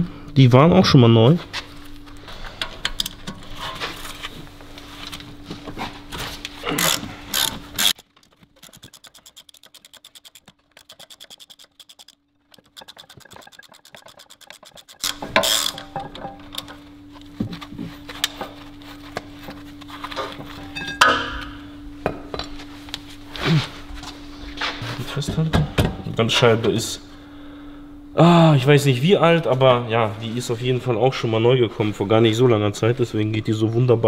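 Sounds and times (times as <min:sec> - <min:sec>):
ratchet wrench clicking: 0:06.8 - 0:08.0, 0:08.6 - 0:15.9
metal parts clinking: 0:06.8 - 0:16.8.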